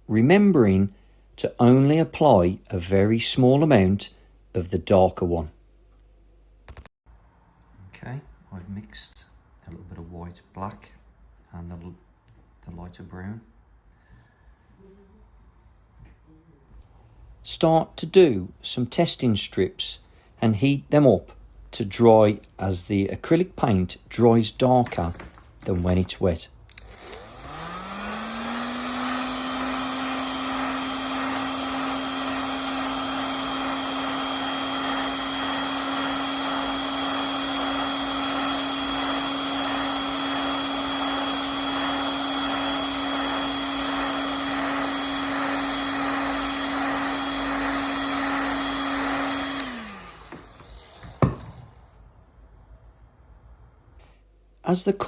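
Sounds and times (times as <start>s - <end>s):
hot-air blower fan motor: 26.8s - 52.2s.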